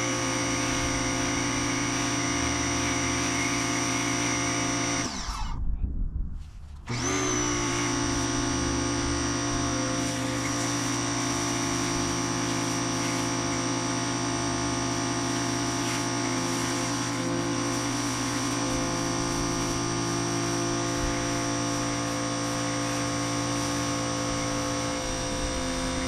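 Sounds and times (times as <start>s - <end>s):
machine drone: 6.8s - 26.0s.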